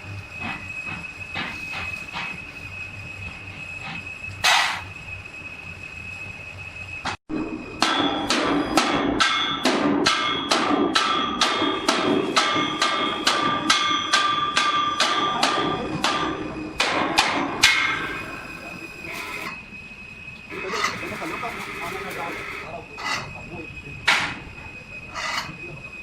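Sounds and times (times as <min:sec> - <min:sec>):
hammer striking ringing steel: 0:07.7 - 0:19.6, 0:22.6 - 0:25.6.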